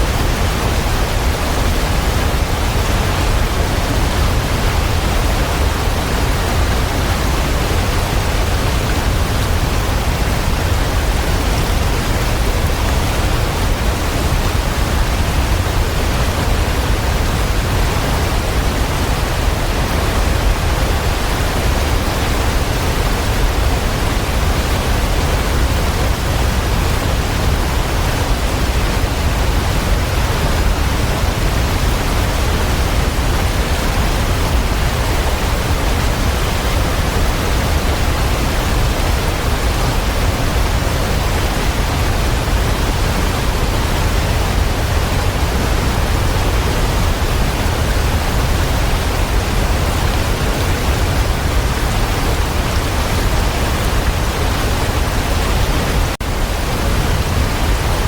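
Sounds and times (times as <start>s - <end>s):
waterfall rushing: 0.0s - 58.0s.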